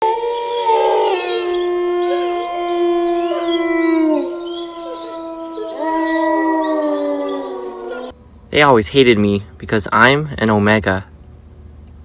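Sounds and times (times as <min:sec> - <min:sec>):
wolves howling: 0:00.0 - 0:08.2.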